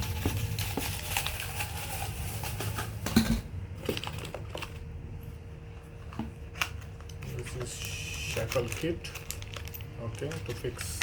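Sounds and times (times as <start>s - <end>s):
steady low hum: 0.0s - 11.0s
clicks and rustles of handling parts: 3.8s - 4.8s, 6.0s - 11.0s.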